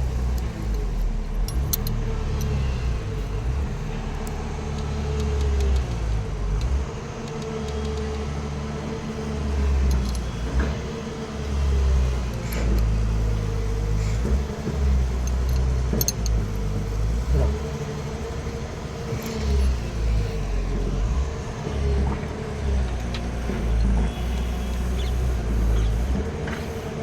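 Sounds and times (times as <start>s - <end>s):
metal tools clinking: 0.3s - 2.6s, 19.1s - 20.0s.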